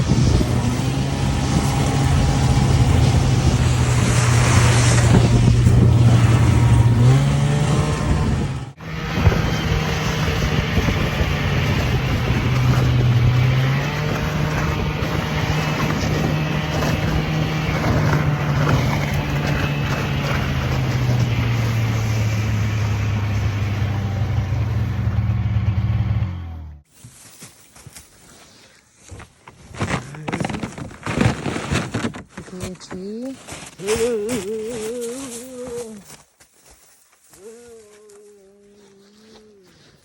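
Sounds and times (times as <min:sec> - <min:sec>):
vehicle engine running: 0:00.2 - 0:26.9.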